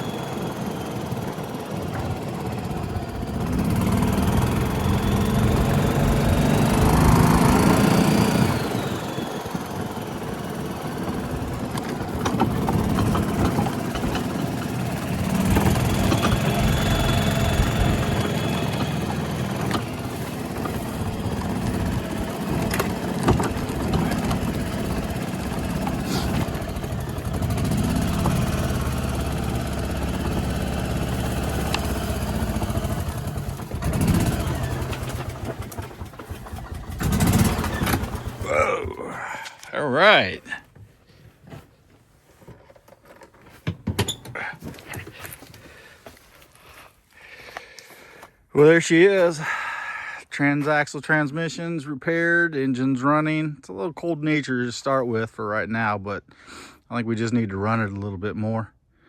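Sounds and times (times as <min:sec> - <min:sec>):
golf cart engine revving: 0:00.0 - 0:40.3.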